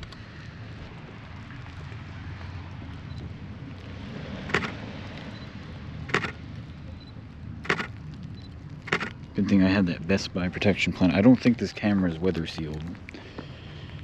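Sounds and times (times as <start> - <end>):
steady low rumble: 0.0 - 11.4
camera shutter clicks: 4.5 - 4.8, 6.1 - 6.4, 7.6 - 7.9, 8.9 - 9.1.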